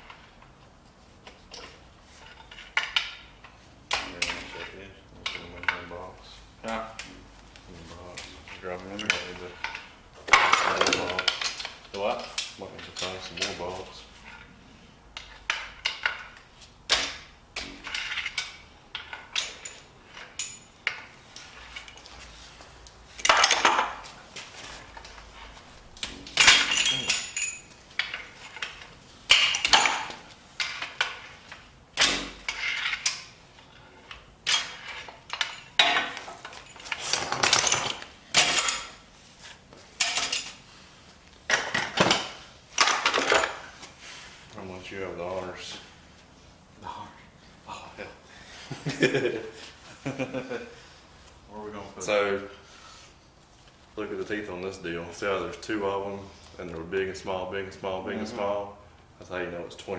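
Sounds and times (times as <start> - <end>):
metal engine parts clanking: 8.2 - 22.2, 23.1 - 39.1, 39.9 - 40.6, 41.5 - 43.8.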